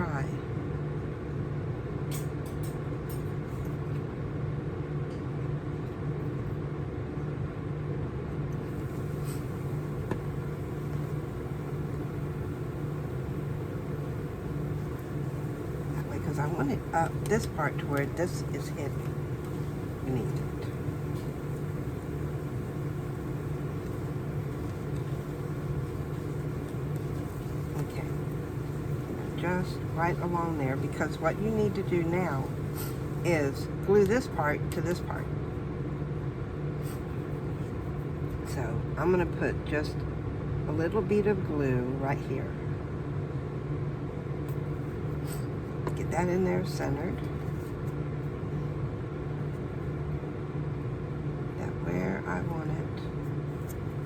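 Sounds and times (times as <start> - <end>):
low machinery hum: 0.0 - 54.0
motor humming: 8.6 - 33.6.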